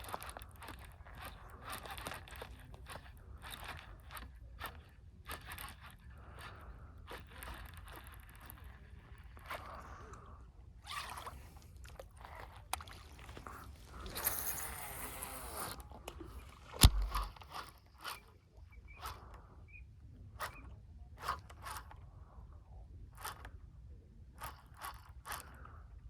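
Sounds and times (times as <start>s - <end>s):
fishing tackle scraping and rustling: 0.0s - 10.1s, 10.8s - 19.4s
sharp thump: 16.8s - 17.4s.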